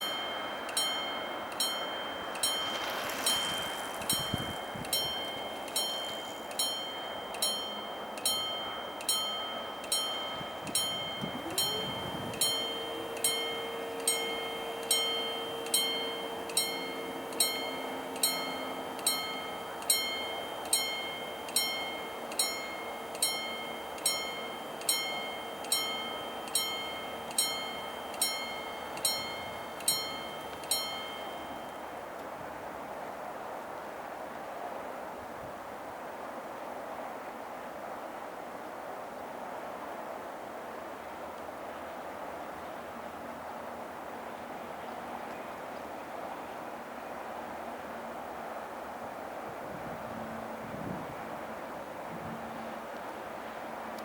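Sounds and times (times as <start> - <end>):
level crossing bell ringing: 0.0 - 32.0
steady hum: 0.0 - 32.2.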